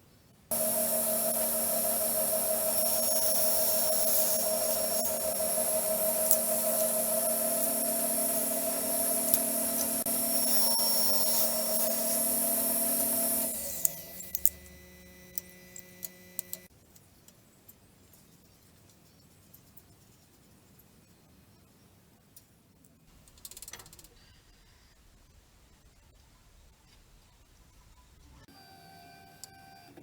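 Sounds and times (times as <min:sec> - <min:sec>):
power tool motor whine: 0:00.5 - 0:16.7
sharp clicks: 0:13.6 - 0:17.0.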